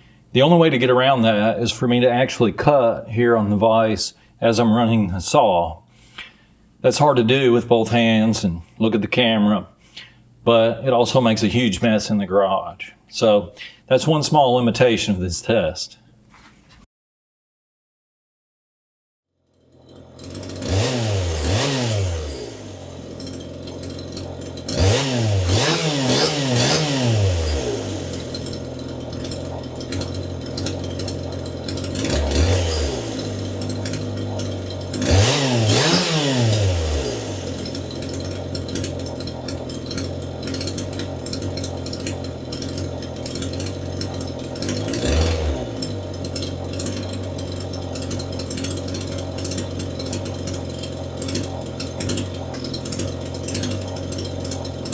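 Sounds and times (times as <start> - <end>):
chainsaw idling and revving: 19.4 - 54.9.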